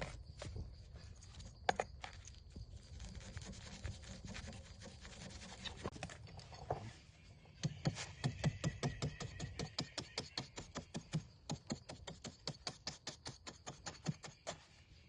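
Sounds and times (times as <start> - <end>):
scratching and rubbing: 0.0 - 8.2.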